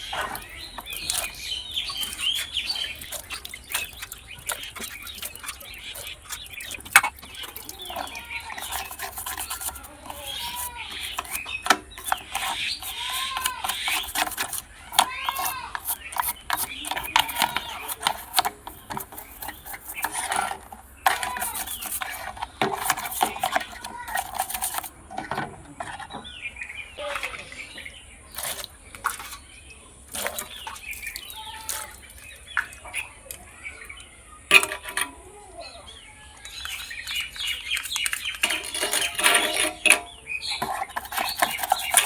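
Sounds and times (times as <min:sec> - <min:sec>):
tools clicking on hard plastic: 0:00.0 - 0:26.3, 0:36.4 - 0:42.0
scraping: 0:00.0 - 0:26.4, 0:28.3 - 0:29.5, 0:30.1 - 0:33.5, 0:34.5 - 0:35.4, 0:36.4 - 0:42.0.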